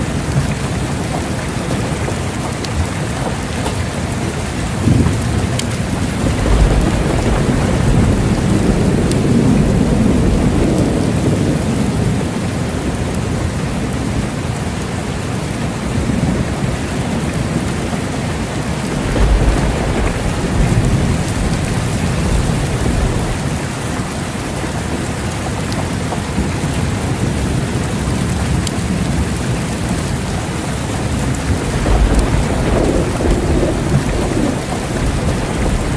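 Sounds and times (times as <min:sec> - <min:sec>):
low rolling thunder: 0:00.0 - 0:14.5, 0:15.8 - 0:25.4, 0:26.2 - 0:35.9
heavy rain: 0:00.0 - 0:35.9.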